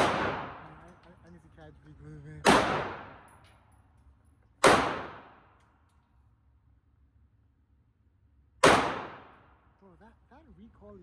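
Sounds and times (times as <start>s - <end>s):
pistol shot echoing: 0.0s - 0.8s, 2.4s - 3.3s, 4.6s - 5.5s, 8.6s - 9.4s.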